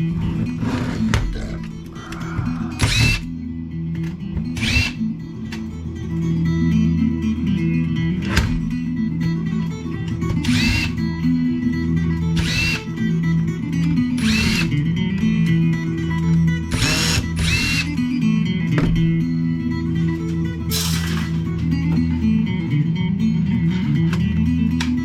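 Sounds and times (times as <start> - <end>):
guitar music on radio: 0.0 - 25.0
cordless drill spinning up: 2.8 - 3.3, 4.6 - 5.0, 10.4 - 11.0, 12.4 - 12.9, 14.2 - 14.7, 16.7 - 17.9.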